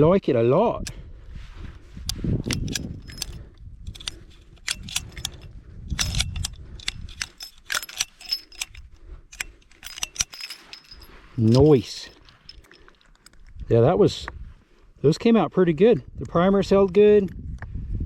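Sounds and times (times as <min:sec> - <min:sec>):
brass cases rattling against metal: 0:02.5 - 0:13.5.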